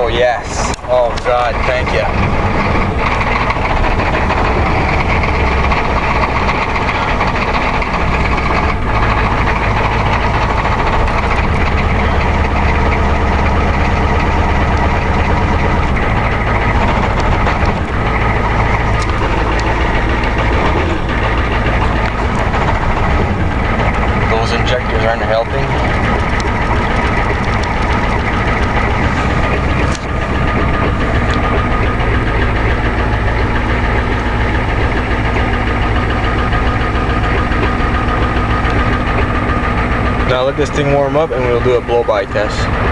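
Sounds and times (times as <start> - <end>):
man talking: 0.0 - 2.2, 24.2 - 25.8, 40.2 - 42.7
diesel engine clattering: 0.0 - 42.9.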